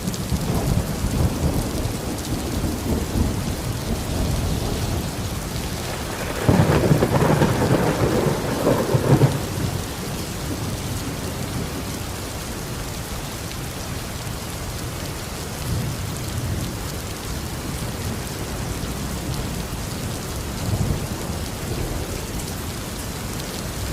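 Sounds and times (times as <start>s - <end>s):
heavy rain falling: 0.0s - 23.9s
thunder rumbling: 0.3s - 12.2s.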